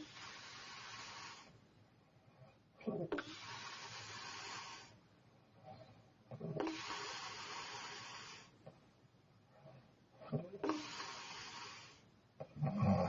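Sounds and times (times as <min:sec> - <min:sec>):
breathy hiss: 0:00.0 - 0:01.6, 0:03.1 - 0:05.0, 0:06.6 - 0:08.6, 0:10.6 - 0:12.1.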